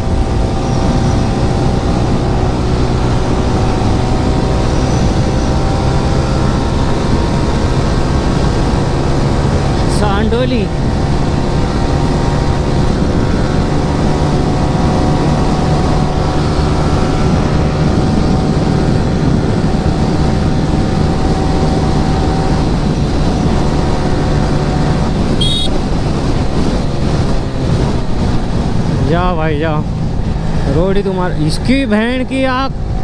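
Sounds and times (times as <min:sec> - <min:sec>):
motorcycle engine cruising: 0:00.0 - 0:33.0
wind noise on microphone: 0:00.0 - 0:33.0
high beep: 0:25.4 - 0:25.8.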